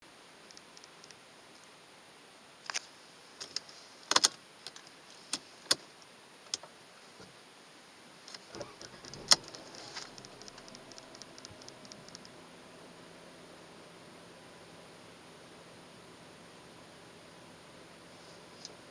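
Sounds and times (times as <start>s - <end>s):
key and controls clicking: 8.3s - 12.4s
car engine idling: 8.4s - 18.9s
car engine starting: 8.4s - 18.9s.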